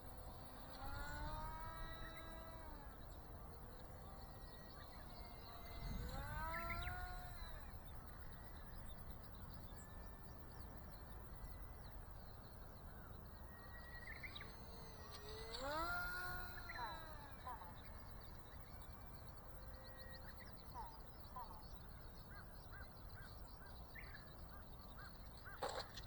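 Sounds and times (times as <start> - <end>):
electric motor and propeller whining: 0.0 - 26.0.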